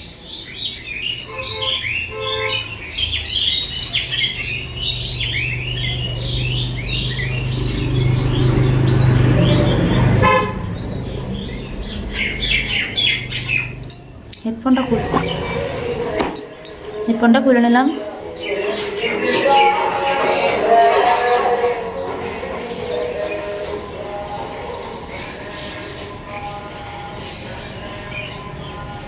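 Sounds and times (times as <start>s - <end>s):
birds chirping: 0.0s - 29.0s
vehicle horn toots: 1.2s - 2.7s, 10.2s - 10.7s
low engine hum: 4.6s - 16.2s.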